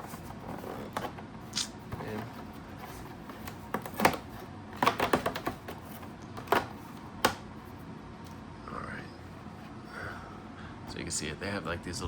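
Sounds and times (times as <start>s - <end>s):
packaging clicking and tapping: 3.3s - 7.4s.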